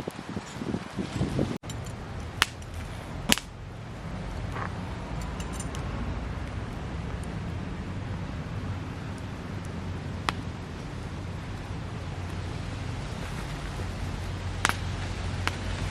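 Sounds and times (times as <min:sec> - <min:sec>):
wood fire crackling: 0:00.2 - 0:15.9
sharp pops: 0:01.6 - 0:03.6, 0:09.0 - 0:15.9
steady low rumble: 0:01.6 - 0:15.9.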